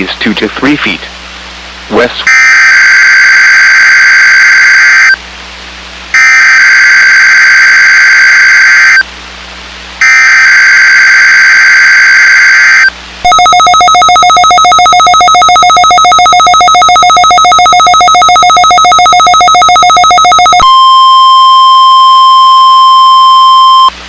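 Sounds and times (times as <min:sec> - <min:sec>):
rapidly pulsing electronic alert tone: 0:10.0 - 0:23.9.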